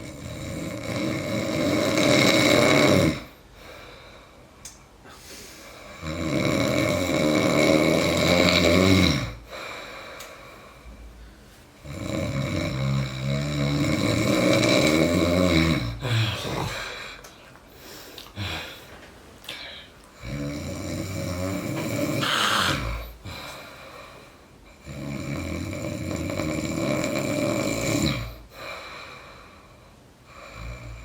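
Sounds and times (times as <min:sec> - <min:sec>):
person snoring loudly: 0:00.0 - 0:03.3, 0:05.8 - 0:09.8, 0:11.8 - 0:17.2, 0:20.2 - 0:23.8, 0:24.7 - 0:28.8, 0:30.3 - 0:31.0
quiet breathing: 0:03.2 - 0:06.2, 0:09.2 - 0:14.6, 0:15.8 - 0:25.2, 0:28.2 - 0:31.0.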